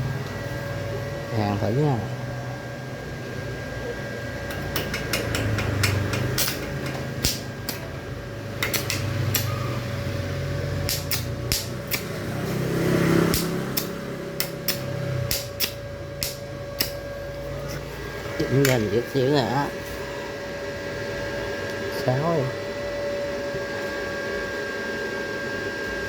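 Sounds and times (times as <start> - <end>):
welding machine hum: 4.2 - 24.1
welding arc crackling and popping: 4.5 - 7.9, 8.6 - 9.5, 10.8 - 12.6, 13.2 - 17.0.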